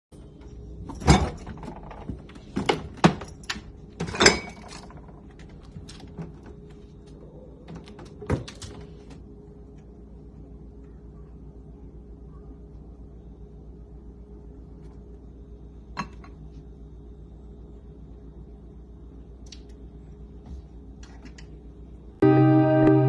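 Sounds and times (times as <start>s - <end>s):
faint steady hum: 0.1s - 23.0s
fridge door and contents thudding: 0.8s - 6.6s, 7.6s - 9.2s.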